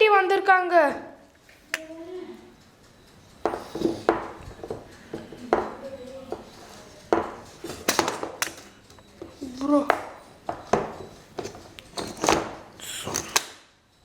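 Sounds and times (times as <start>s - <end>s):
dishes and utensils clinking: 3.4s - 13.5s.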